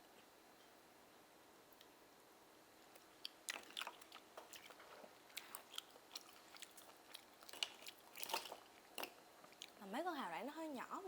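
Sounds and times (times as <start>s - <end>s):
wet chewing clicks and smacks: 3.0s - 9.8s.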